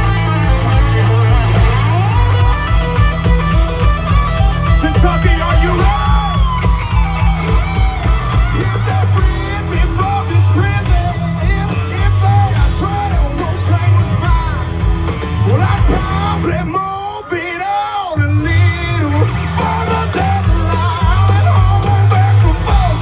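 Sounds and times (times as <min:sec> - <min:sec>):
country-rock band playing: 0:00.0 - 0:23.0
person singing: 0:04.8 - 0:06.8, 0:07.8 - 0:23.0.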